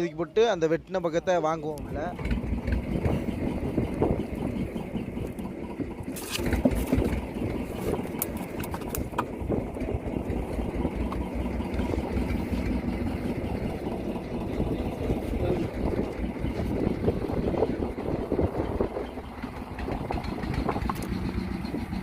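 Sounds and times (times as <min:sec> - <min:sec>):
boat engine idling: 0:00.0 - 0:22.0
sharp clicks and knocks: 0:08.0 - 0:09.4, 0:19.8 - 0:21.4.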